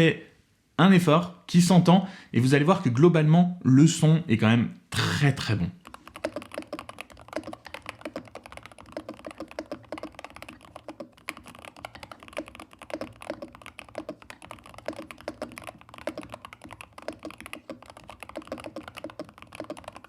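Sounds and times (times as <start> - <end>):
fast typing on mechanical keyboard: 5.8 - 20.0.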